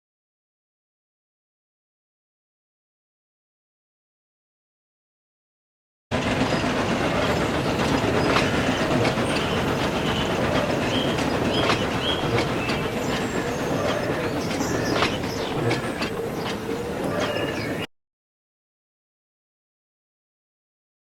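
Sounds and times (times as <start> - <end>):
train running rumble: 6.1 - 17.9
train wheels clattering: 6.1 - 17.9.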